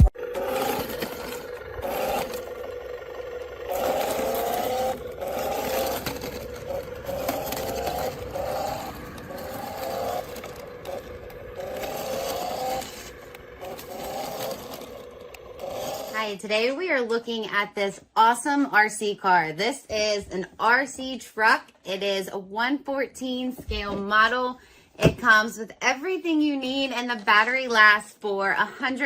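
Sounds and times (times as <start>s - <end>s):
scraping noise: 0.0s - 16.5s
toy truck motor whining: 0.0s - 17.1s.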